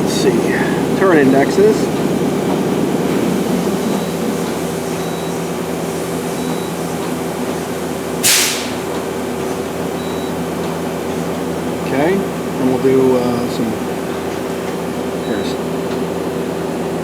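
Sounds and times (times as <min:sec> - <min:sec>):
machine humming: 0:00.0 - 0:17.0
short sharp hiss: 0:08.2 - 0:09.0.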